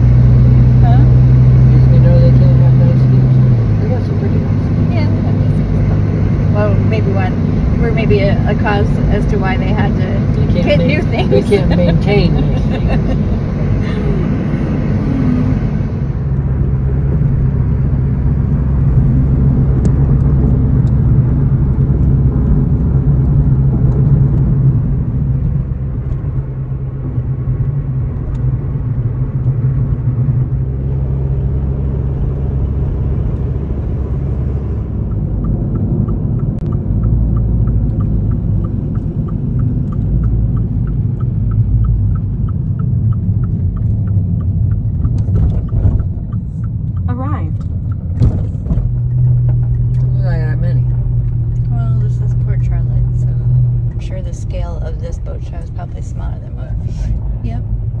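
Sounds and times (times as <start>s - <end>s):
car interior rumble: 0.0s - 58.0s
fast even ticking: 35.0s - 48.2s.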